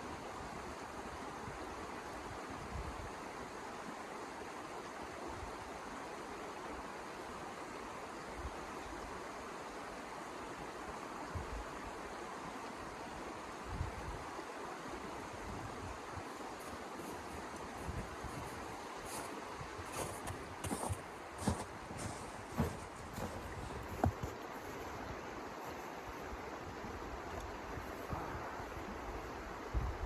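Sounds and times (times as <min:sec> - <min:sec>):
snowstorm wind rushing: 0:16.3 - 0:25.9.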